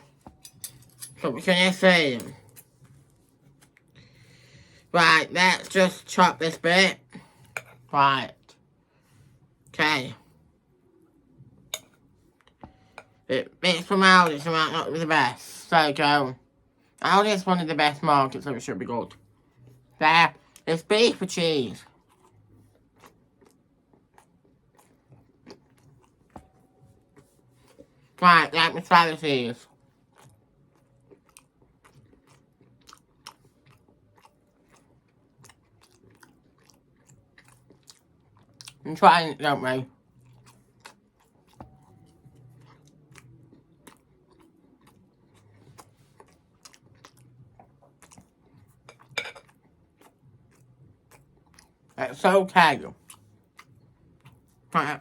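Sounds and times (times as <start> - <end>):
person chewing: 21.8 - 28.0, 29.7 - 38.8, 40.1 - 52.0, 53.0 - 54.7.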